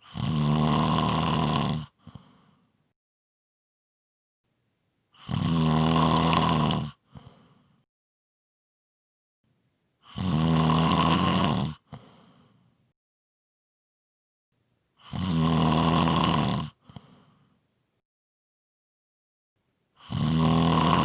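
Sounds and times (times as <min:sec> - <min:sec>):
loud snoring: 0:00.0 - 0:02.6, 0:05.2 - 0:07.6, 0:10.0 - 0:12.6, 0:15.0 - 0:17.5, 0:20.0 - 0:21.0
soft breath: 0:02.0 - 0:02.8, 0:07.1 - 0:07.9, 0:11.9 - 0:12.9, 0:16.8 - 0:17.7.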